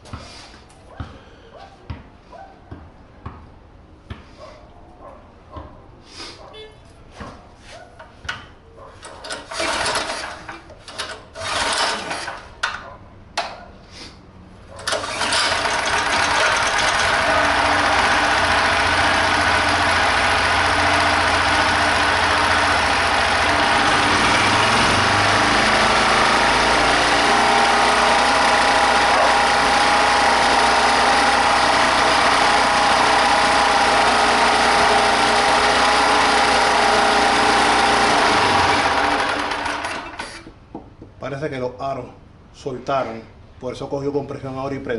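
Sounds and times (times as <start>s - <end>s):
generator engine cranking: 9.0s - 12.8s, 14.8s - 40.6s
generator engine running: 9.2s - 12.6s, 14.8s - 40.4s.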